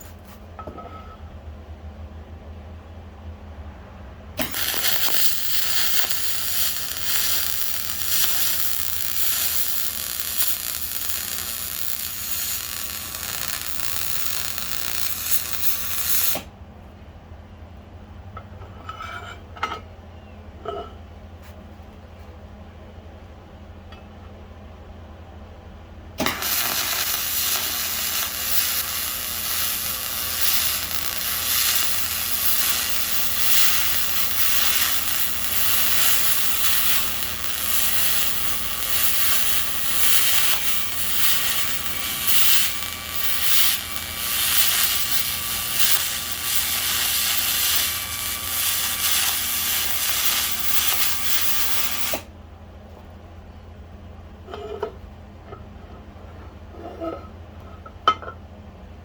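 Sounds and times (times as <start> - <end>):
low hum: 0.7 - 18.2, 25.6 - 52.6
motor machine rough hiss: 4.4 - 16.5, 26.2 - 52.3.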